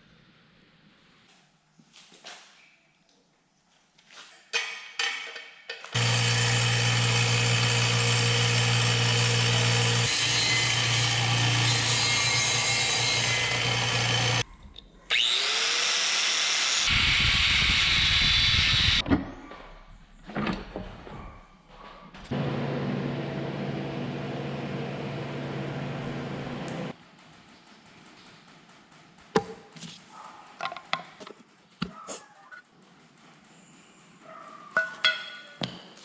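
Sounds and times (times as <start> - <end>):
power tool working metal: 6.0 - 14.4, 15.1 - 19.0, 22.3 - 26.9.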